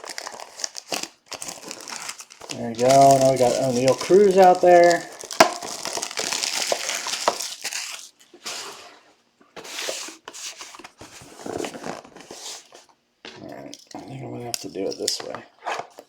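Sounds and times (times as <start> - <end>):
foil wrappers tearing and crinkling: 0.0 - 8.8.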